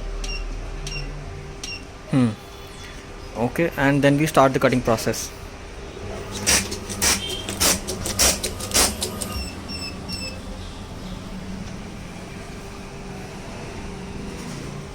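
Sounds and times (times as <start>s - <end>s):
low machine hum: 0.0s - 14.9s
tape cutter strikes: 6.3s - 9.4s
short high beeps: 9.2s - 10.4s.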